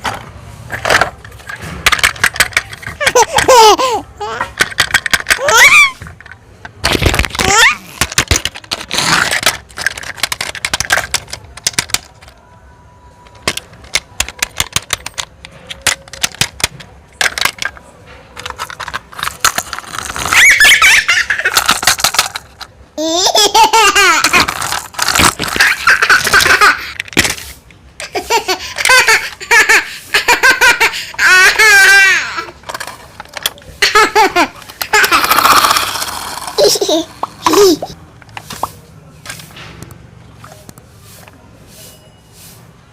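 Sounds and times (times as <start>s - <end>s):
sharp clicks and knocks: 0.0s - 3.5s, 13.2s - 20.2s
child laughing: 2.9s - 4.6s, 5.3s - 6.0s, 20.2s - 21.8s, 23.0s - 24.6s, 25.2s - 27.0s, 28.0s - 32.6s, 33.8s - 38.0s.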